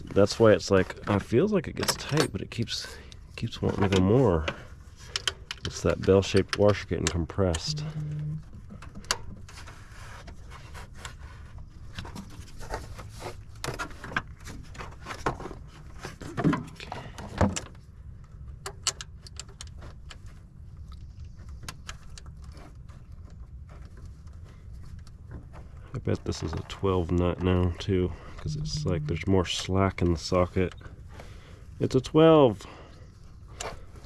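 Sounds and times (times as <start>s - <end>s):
low hum: 7.4s - 8.6s, 28.2s - 29.7s.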